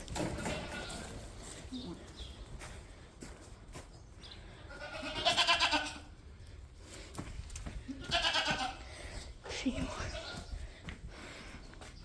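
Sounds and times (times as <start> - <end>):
animal bleating: 0.2 - 2.1, 4.6 - 6.2, 7.8 - 9.0.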